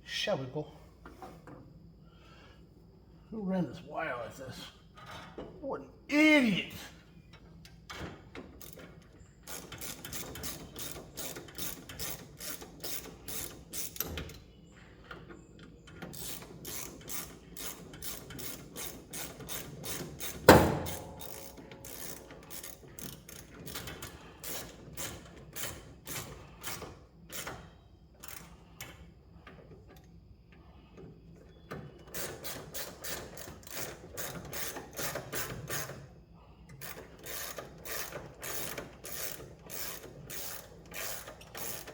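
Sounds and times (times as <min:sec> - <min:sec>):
ratchet wrench clicking: 0:08.6 - 0:14.1, 0:16.1 - 0:27.6, 0:32.1 - 0:35.9, 0:36.8 - 0:41.9.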